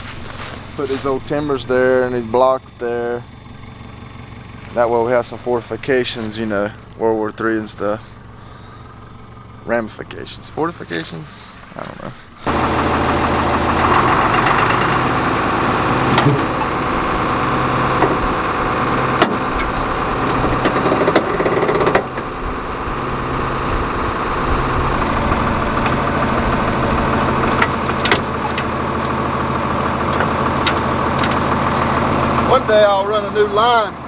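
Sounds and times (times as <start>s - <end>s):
tractor engine running: 0.0s - 34.0s
sharp clicks and clanks: 25.1s - 32.6s.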